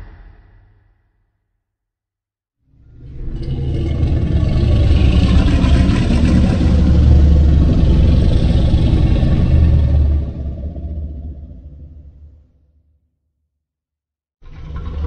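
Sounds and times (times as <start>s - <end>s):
deep monster roar: 2.8s - 12.4s.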